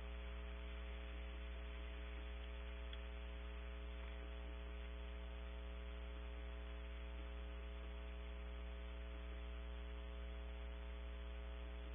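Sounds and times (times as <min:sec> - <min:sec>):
electrical mains hum: 0:00.0 - 0:11.9
faint soft ticks: 0:00.1 - 0:05.6.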